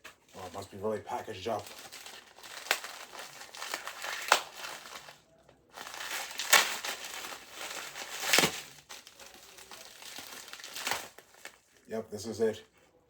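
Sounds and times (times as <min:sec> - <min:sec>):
packaging torn and crumpled: 0:01.4 - 0:11.8.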